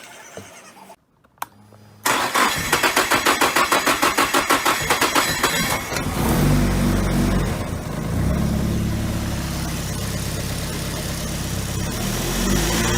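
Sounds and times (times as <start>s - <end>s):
engine cranking and idling: 2.0s - 10.9s.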